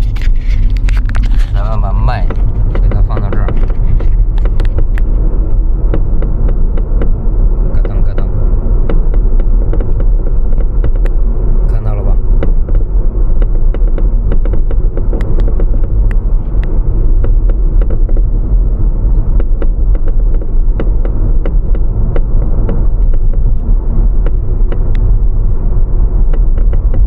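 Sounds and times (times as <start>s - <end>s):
road and tyre rumble: 0.0s - 27.0s
sharp clicks and knocks: 0.0s - 27.0s.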